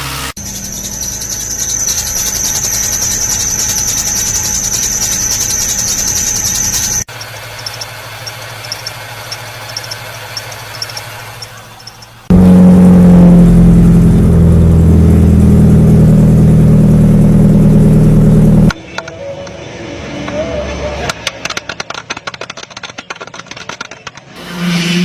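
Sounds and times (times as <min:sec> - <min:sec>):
loud low drone: 0:12.3 - 0:18.7.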